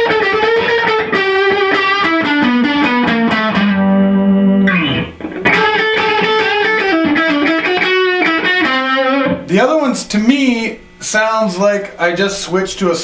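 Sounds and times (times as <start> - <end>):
electric guitar lead: 0.0 - 9.5.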